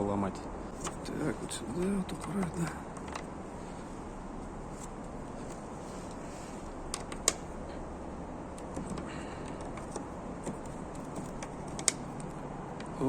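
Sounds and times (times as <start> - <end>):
steady background noise: 0.0 - 13.0
plastic clips clicking: 6.9 - 7.6.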